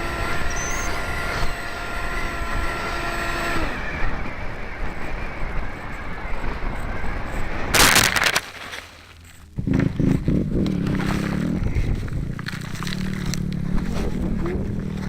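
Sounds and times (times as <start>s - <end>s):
electric motor whining: 0.0s - 7.8s.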